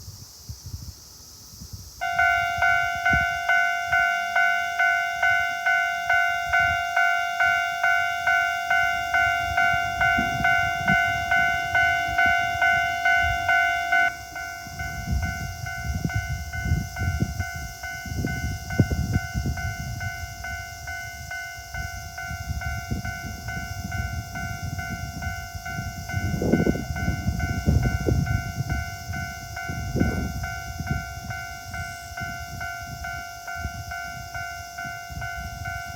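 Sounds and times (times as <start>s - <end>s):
level crossing electronic bell: 2.0s - 35.9s
train rumbling over crossing: 2.0s - 35.9s.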